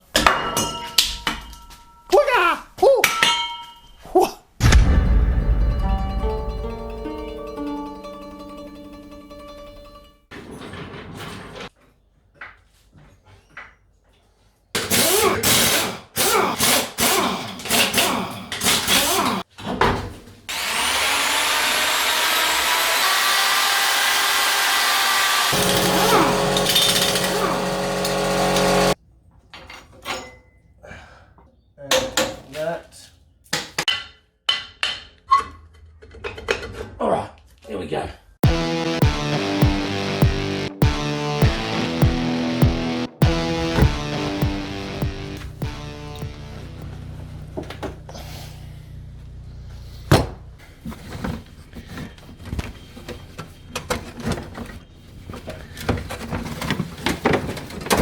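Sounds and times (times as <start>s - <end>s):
plucked guitar music: 5.3s - 10.2s, 25.6s - 29.0s, 38.4s - 47.5s
power tool whirring: 20.5s - 29.0s
sharp metallic clanks: 25.5s - 29.0s.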